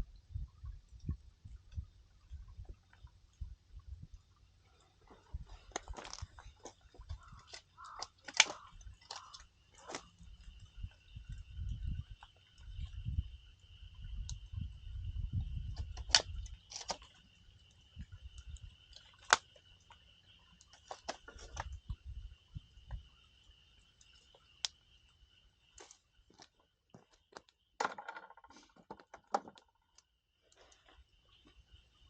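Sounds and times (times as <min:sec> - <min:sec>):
campfire crackling and popping: 0:05.6 - 0:10.6, 0:23.9 - 0:25.1.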